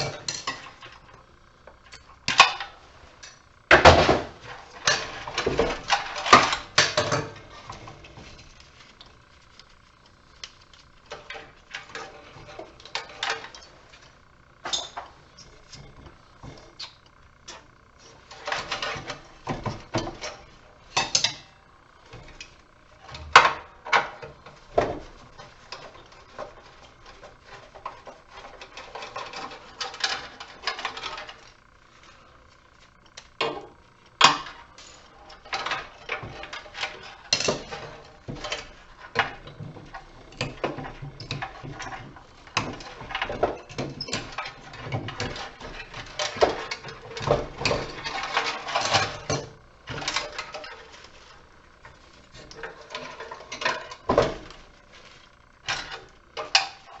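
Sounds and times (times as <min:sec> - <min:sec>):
metal parts clanking: 0:34.2 - 0:51.5.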